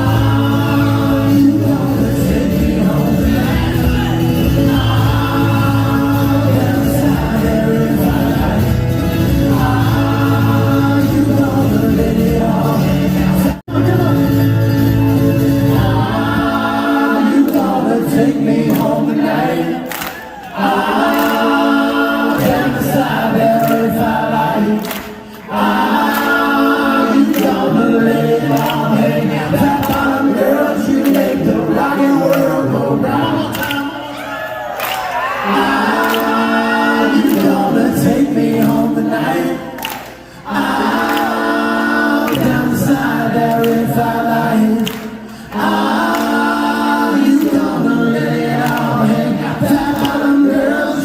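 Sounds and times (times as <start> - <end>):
a cappella vocal harmonies: 0.0 - 51.0.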